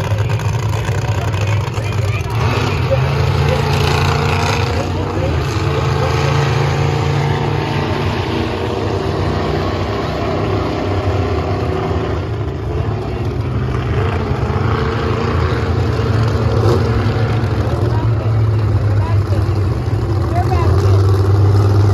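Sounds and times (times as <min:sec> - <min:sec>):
monster truck engines running: 0:00.0 - 0:21.9.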